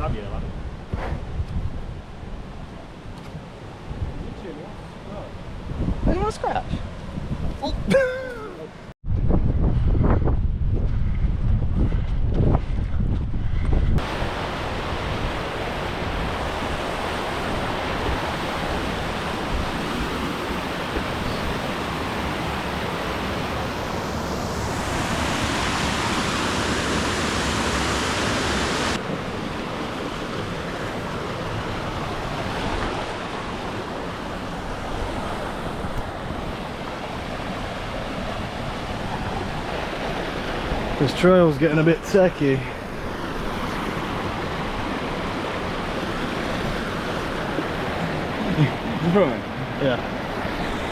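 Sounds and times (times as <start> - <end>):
wind on microphone: 0.0 - 4.5, 5.2 - 8.0, 9.0 - 41.0
fast-running stream rushing: 14.0 - 50.9.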